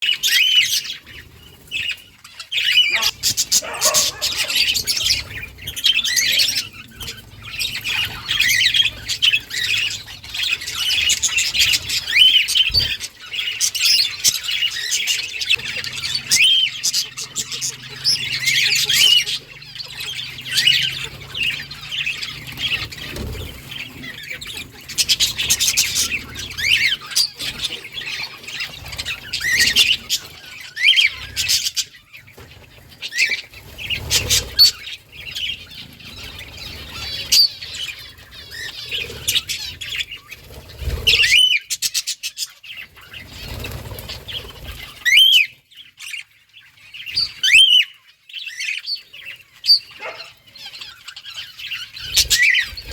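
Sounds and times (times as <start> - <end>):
budgerigars chirping and squawking: 0.0 - 52.9
wing flapping: 2.8 - 5.7.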